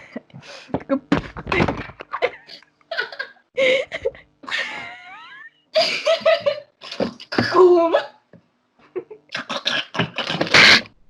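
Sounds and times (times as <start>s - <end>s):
person laughing: 1.3s - 6.7s, 8.8s - 9.3s.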